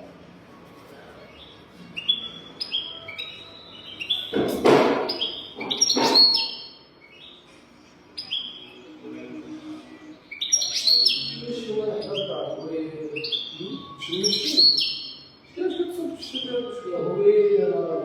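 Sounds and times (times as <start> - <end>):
goldfinch twittering song: 1.4 - 4.4, 5.0 - 7.4, 8.1 - 9.0, 10.3 - 16.9.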